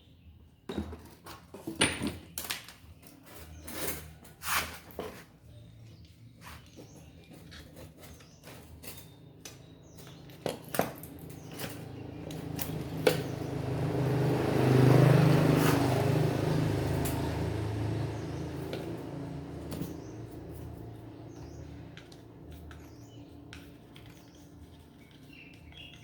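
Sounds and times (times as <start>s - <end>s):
electric fan motor humming: 11.2s - 25.9s.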